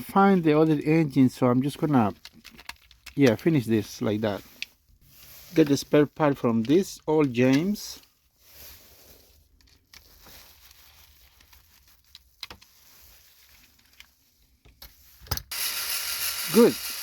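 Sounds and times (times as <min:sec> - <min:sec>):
plastic toy parts handled: 0:00.6 - 0:08.1, 0:09.5 - 0:17.0.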